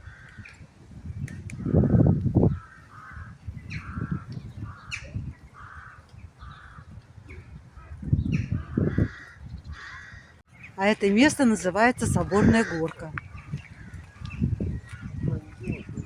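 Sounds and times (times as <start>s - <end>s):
crows cawing: 0.0s - 0.5s, 1.6s - 7.0s, 7.8s - 10.4s, 12.1s - 15.2s.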